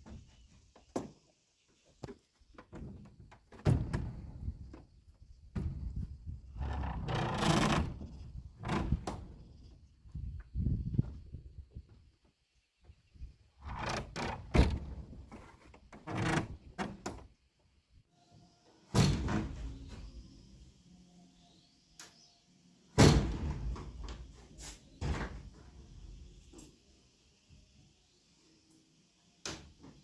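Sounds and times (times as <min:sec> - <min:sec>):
wood sliding and scraping: 0:06.6 - 0:09.7, 0:13.6 - 0:17.0.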